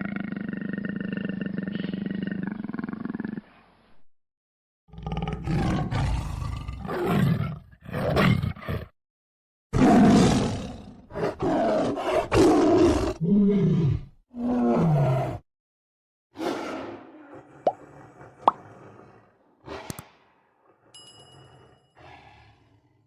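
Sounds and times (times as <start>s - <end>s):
tiger roaring and growling: 0.0s - 3.6s, 4.9s - 8.9s, 9.8s - 15.4s, 16.4s - 19.9s, 21.6s - 23.0s.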